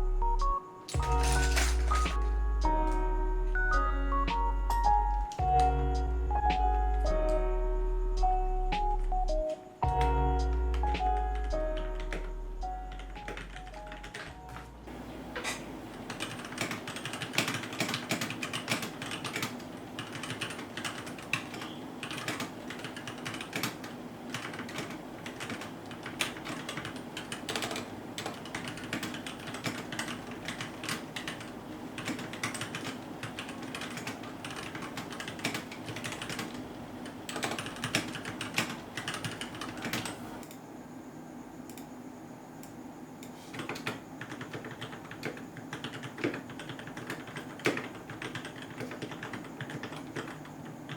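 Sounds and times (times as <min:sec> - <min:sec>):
mechanical keyboard typing: 0:00.9 - 0:02.3, 0:10.0 - 0:12.3, 0:12.9 - 0:40.6, 0:43.5 - 0:50.9.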